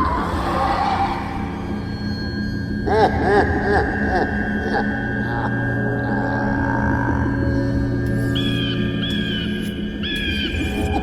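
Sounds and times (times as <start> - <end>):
droning music bed: 0.0 - 11.0
evil laugh: 2.9 - 5.0.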